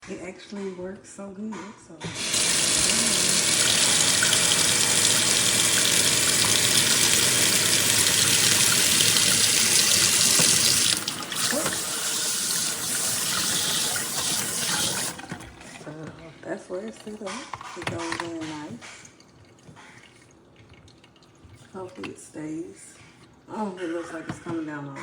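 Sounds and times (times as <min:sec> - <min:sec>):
water rushing from hose sprayer: 0:02.1 - 0:15.8.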